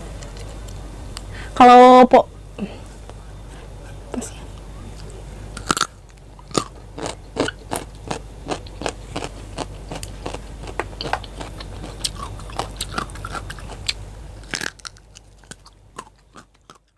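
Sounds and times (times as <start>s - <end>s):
low hum: 0.0s - 16.9s
crunchy chewing of vegetables: 5.0s - 16.9s.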